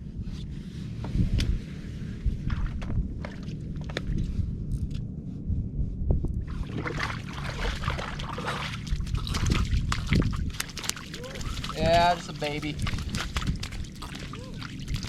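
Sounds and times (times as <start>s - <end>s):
low steady rumble: 0.0s - 15.0s
water splashing and sloshing: 2.2s - 5.0s, 6.4s - 15.0s.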